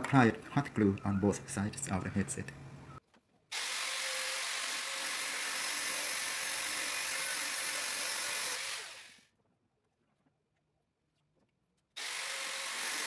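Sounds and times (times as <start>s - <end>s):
grinder running and winding down: 3.6s - 9.2s, 12.0s - 13.0s.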